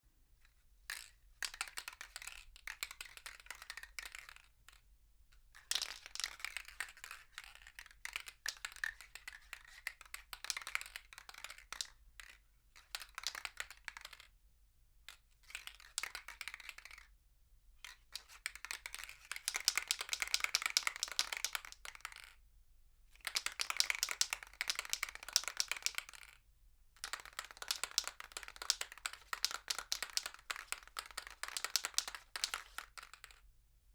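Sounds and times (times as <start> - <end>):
spray paint can rattling: 19.6 - 21.7, 23.4 - 26.2, 27.3 - 33.4.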